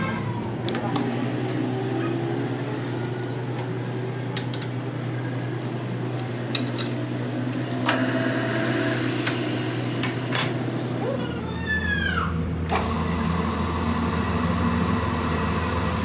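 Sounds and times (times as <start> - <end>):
metallic clinks of tools: 0.7 - 1.2.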